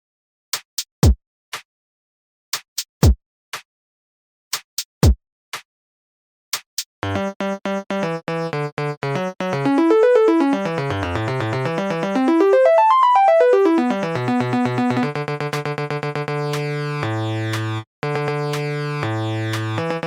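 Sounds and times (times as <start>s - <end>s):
synthesized keyboard music: 7.0s - 16.7s.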